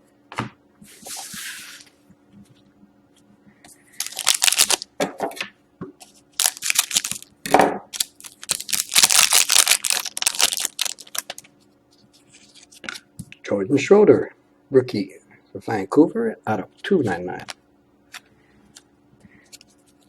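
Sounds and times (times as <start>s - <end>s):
wrapper crinkling and tearing: 4.0s - 4.9s, 6.3s - 7.3s, 7.9s - 11.5s.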